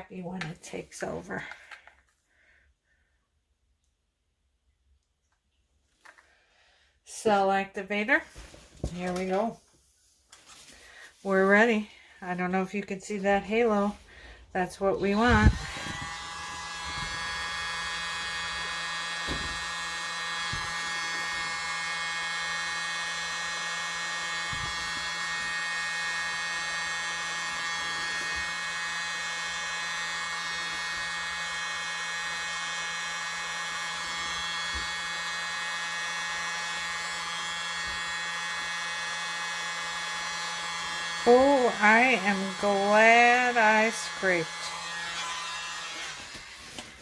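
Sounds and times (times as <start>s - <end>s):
electric air blower whining: 13.4s - 47.0s.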